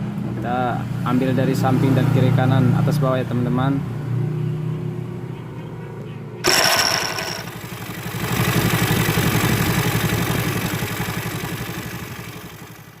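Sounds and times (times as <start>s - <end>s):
engine idling: 6.4s - 13.0s.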